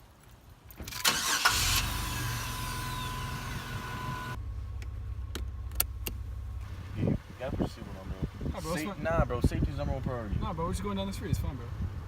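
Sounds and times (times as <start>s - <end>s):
car engine starting and idling: 0.9s - 8.2s.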